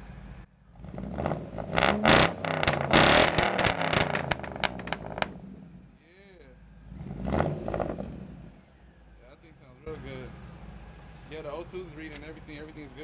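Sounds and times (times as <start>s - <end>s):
car engine revving: 0.7s - 5.9s, 6.8s - 8.6s.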